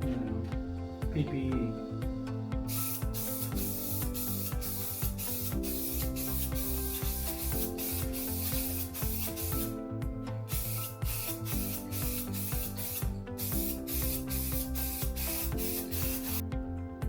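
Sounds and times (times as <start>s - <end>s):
background music: 0.0s - 17.0s
spray paint hissing: 2.7s - 9.8s, 10.4s - 16.4s.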